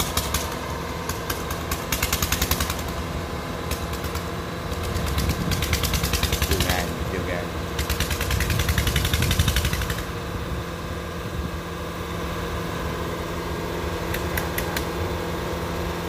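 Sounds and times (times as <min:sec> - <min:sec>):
diesel engine running: 0:00.0 - 0:16.0
sharp clicks: 0:14.1 - 0:14.9.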